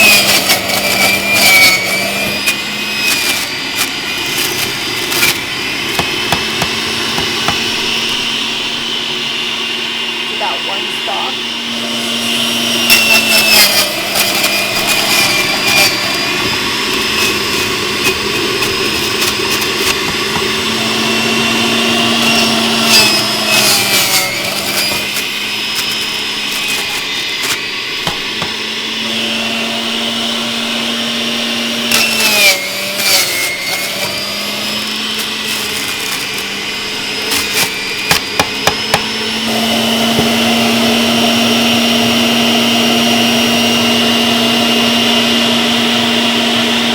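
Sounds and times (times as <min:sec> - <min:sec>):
celery crunching: 0:00.0 - 0:08.9, 0:13.0 - 0:29.3, 0:31.9 - 0:40.6
juicer motor hum: 0:00.0 - 0:46.9.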